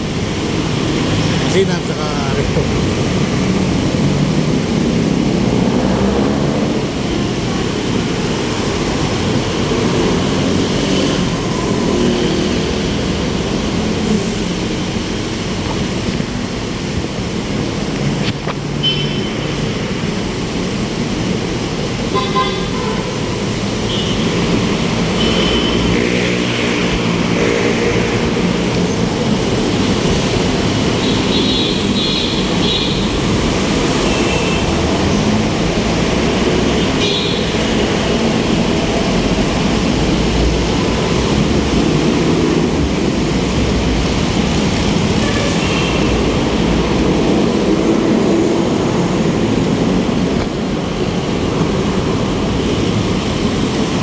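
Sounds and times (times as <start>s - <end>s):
traffic engines running: 0.0s - 54.0s
car horn toots: 22.1s - 23.2s, 23.9s - 24.5s, 25.1s - 26.2s, 36.8s - 37.7s.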